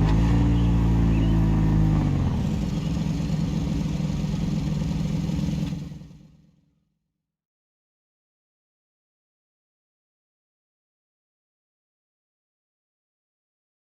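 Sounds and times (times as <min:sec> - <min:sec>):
motorcycle engine revving and idling: 0:00.0 - 0:06.8.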